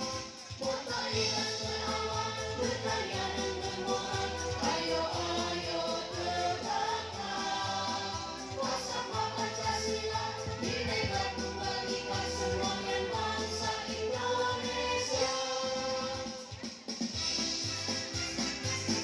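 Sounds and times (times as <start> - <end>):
voices singing together: 0.0 - 16.8
steady bass line: 1.1 - 15.3.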